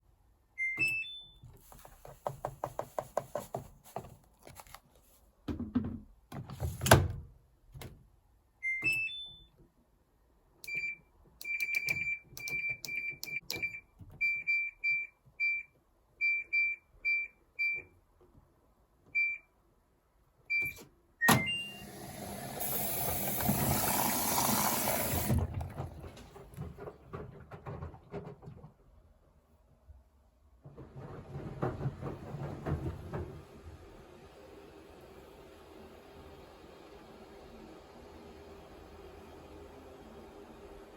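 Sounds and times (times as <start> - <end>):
washing machine rushing hiss: 21.7 - 25.4.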